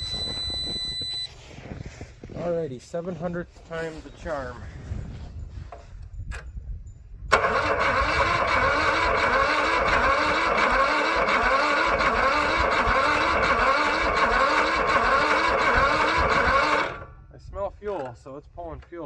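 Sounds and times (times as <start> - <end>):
lawn mower engine cranking: 7.3 - 17.1.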